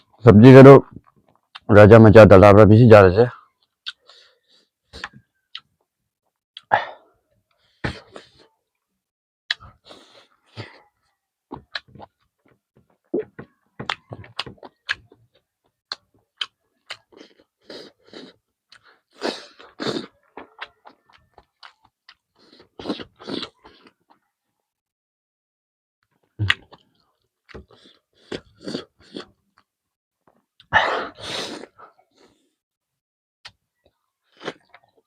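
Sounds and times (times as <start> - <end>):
person chewing food: 3.5 - 5.8, 9.5 - 24.3, 26.1 - 32.5, 33.4 - 35.0
wet mouth clicks and smacks: 3.8 - 4.1.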